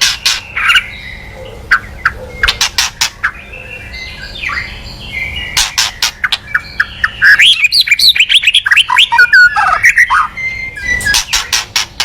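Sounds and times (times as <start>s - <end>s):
bird whistled notes: 3.2s - 11.6s.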